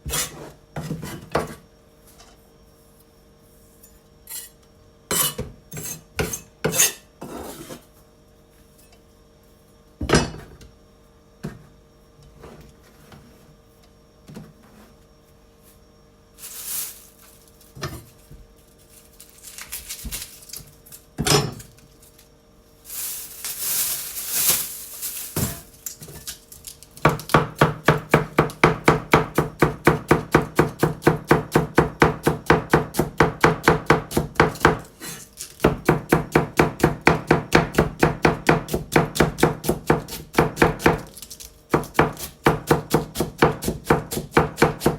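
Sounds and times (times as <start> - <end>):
knocks and rustling of cabbage: 16.4 - 20.9, 22.8 - 27.3
knife shredding cabbage on board: 27.1 - 44.9.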